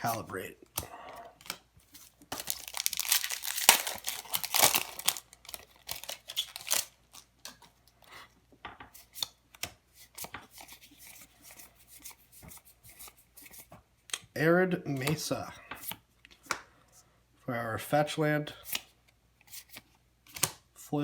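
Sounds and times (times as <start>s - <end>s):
cards being handled: 0.0s - 7.8s, 14.9s - 16.6s, 18.6s - 20.6s
foil wrapper tearing and crinkling: 2.2s - 7.3s.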